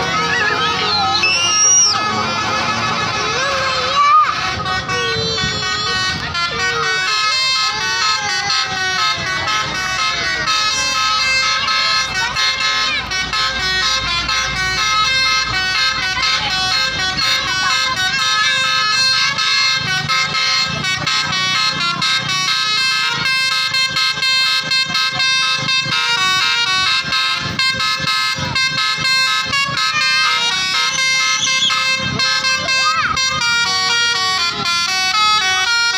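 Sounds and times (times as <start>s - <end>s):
musical air horn playing a tune: 0.0s - 35.9s.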